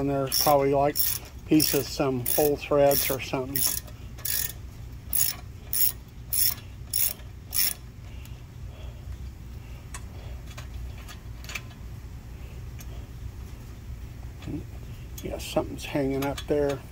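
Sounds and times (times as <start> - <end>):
steady low hum: 0.0 - 16.9
ratchet handle clicking: 0.3 - 7.8.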